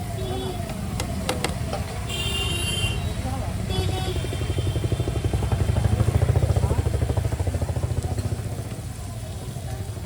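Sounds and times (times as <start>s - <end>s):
motorcycle engine passing: 3.1s - 10.0s.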